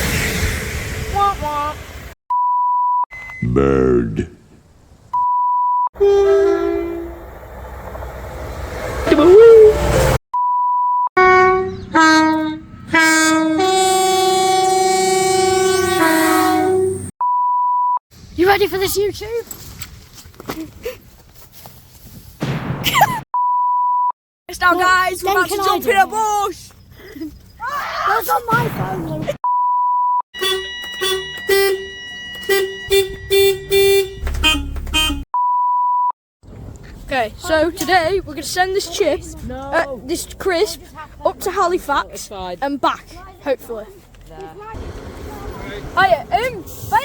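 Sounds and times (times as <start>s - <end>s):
steady pure beep: 2.3s - 3.8s, 29.4s - 36.1s
short horn-like toots: 6.0s - 7.3s, 30.4s - 35.2s
train horn blasts: 6.0s - 7.7s, 11.2s - 17.1s, 30.4s - 35.2s.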